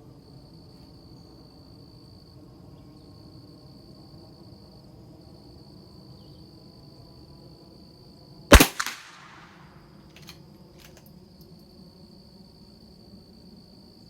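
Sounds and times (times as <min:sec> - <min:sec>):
rifle shot with echo: 0:08.5 - 0:09.7.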